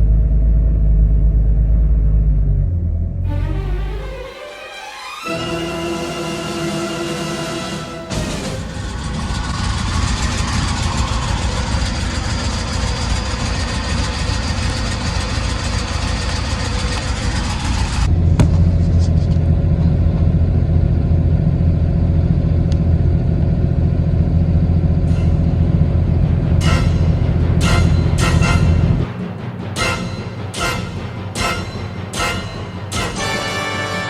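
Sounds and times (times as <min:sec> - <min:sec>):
car engine idling roughly: 0:08.2 - 0:29.0.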